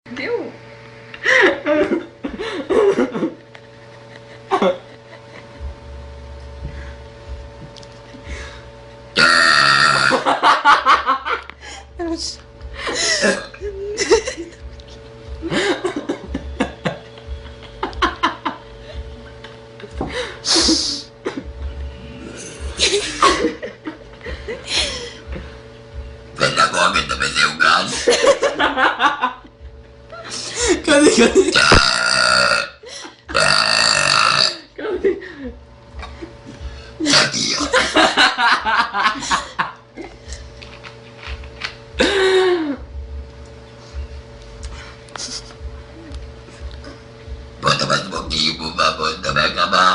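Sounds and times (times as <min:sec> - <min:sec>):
faint steady hum: 0:00.1 - 0:49.9
giggling laughter: 0:01.2 - 0:05.6, 0:10.1 - 0:11.9, 0:12.8 - 0:21.5, 0:22.6 - 0:25.5, 0:27.9 - 0:29.5, 0:30.1 - 0:31.6, 0:34.8 - 0:36.4, 0:37.0 - 0:40.4
girl belching: 0:09.2 - 0:10.3, 0:31.5 - 0:34.7, 0:47.6 - 0:49.9.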